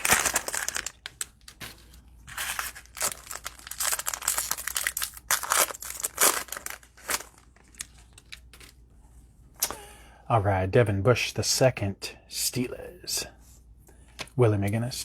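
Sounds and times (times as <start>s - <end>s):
cellophane wrapper crinkling and tearing: 0.0s - 8.8s.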